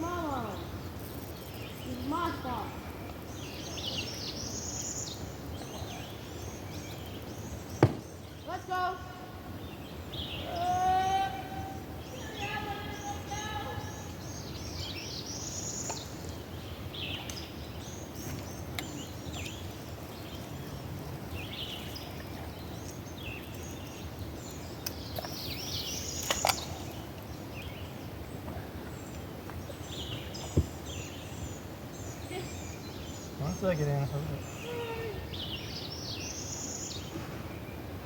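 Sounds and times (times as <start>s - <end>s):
birds chirping: 0.0s - 38.0s
low thump: 7.8s - 8.1s
sharp knock: 7.8s - 8.1s.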